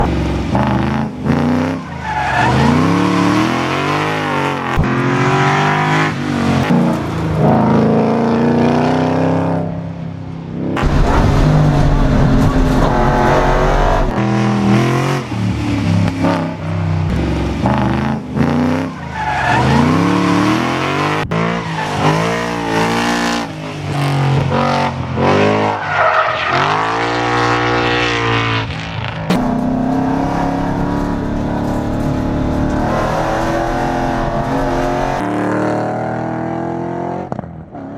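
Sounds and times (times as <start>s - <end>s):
race car engine revving: 0.0s - 9.4s, 26.5s - 37.3s.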